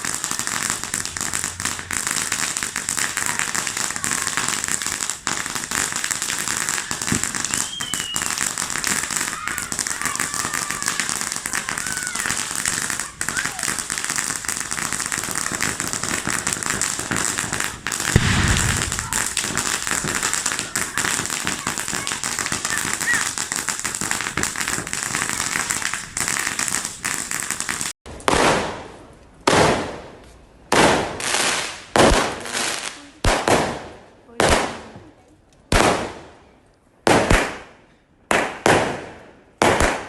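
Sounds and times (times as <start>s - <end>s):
firework bursts: 0.0s - 28.9s
fireworks crackling: 0.0s - 36.2s.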